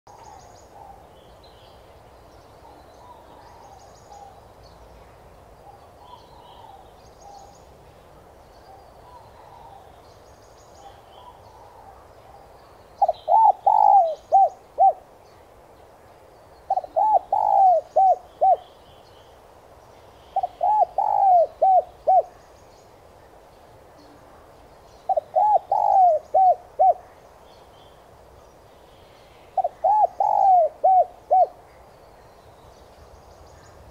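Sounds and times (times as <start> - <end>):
small birds chirping: 0.1 - 33.9
dove cooing: 13.0 - 15.1, 16.7 - 18.7, 20.4 - 22.4, 25.1 - 27.2, 29.6 - 31.6.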